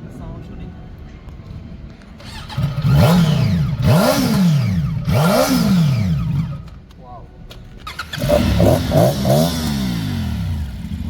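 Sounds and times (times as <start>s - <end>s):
motorcycle engine idling and revving: 2.2s - 6.8s, 7.7s - 11.0s.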